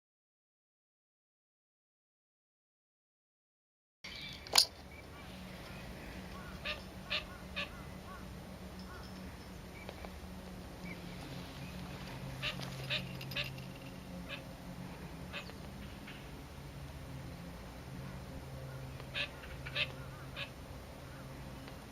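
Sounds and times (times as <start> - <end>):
coot calls: 5.1 - 9.2, 12.4 - 13.6, 14.2 - 14.5, 18.6 - 21.3.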